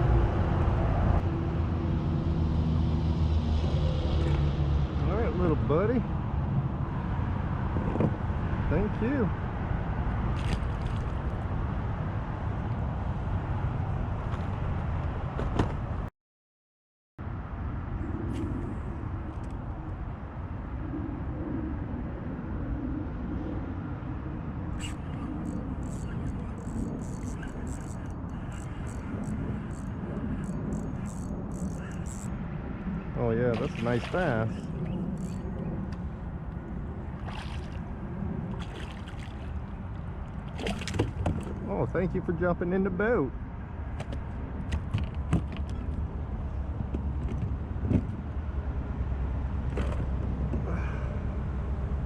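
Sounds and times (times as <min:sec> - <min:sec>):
low rumbling outdoor noise: 0:00.0 - 0:16.1, 0:17.2 - 0:52.0
wind: 0:00.0 - 0:16.1, 0:17.2 - 0:52.0
water moving around a kayak: 0:10.2 - 0:11.4, 0:24.8 - 0:32.3, 0:33.5 - 0:41.7
faint water splashes: 0:33.4 - 0:35.4, 0:37.1 - 0:41.7.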